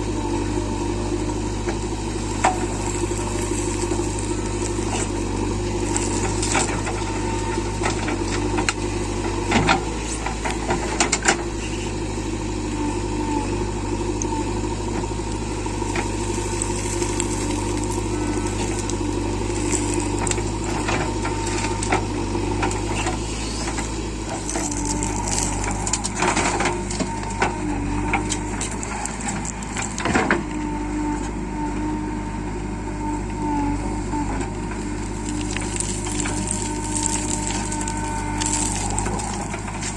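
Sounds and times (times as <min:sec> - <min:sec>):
diesel engine working: 0:00.0 - 0:39.9.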